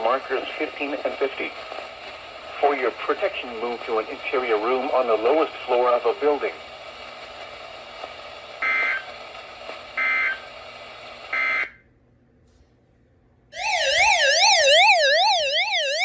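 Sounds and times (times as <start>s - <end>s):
screeching digital data bursts: 13.6s - 16.0s
warbling electronic alert siren: 13.6s - 16.0s.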